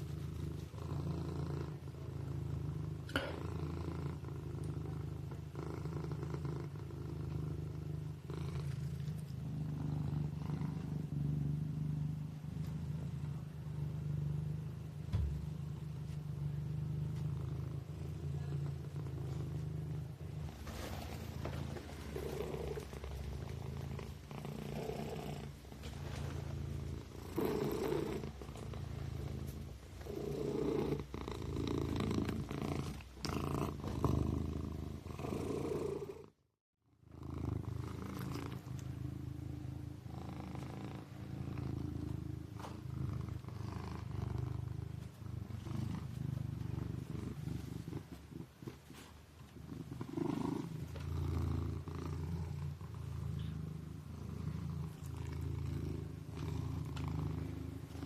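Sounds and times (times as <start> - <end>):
kitten purring: 0.0 - 36.4, 37.0 - 58.0.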